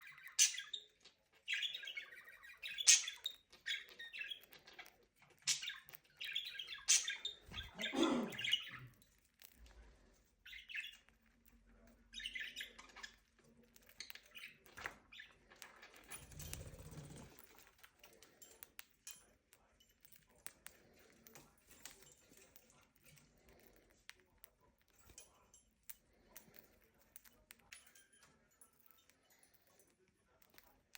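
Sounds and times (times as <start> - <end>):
budgerigars chirping: 0.0 - 4.4, 5.5 - 8.9.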